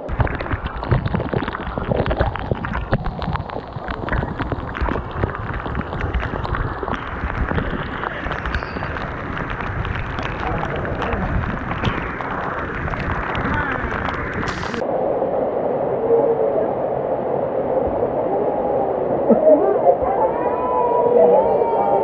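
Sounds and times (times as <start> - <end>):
waterfall rushing and splashing: 0.0 - 14.8.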